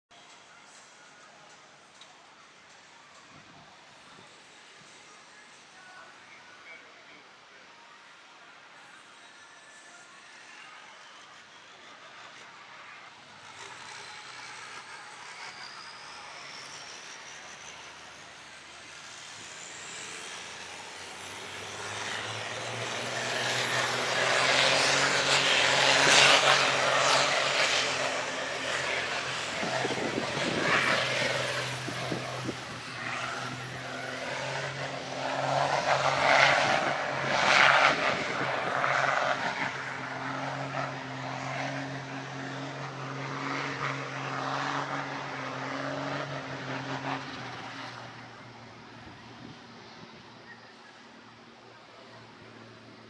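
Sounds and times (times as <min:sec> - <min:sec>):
faint high whine: 0:00.4 - 0:37.2
low engine hum: 0:11.8 - 0:53.0
rushing noise: 0:13.5 - 0:49.8.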